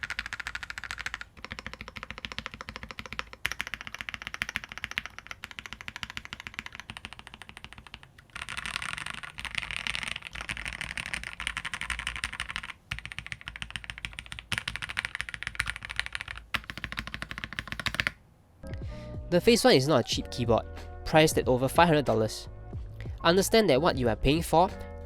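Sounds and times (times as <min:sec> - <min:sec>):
mechanical keyboard typing: 0:00.0 - 0:18.2.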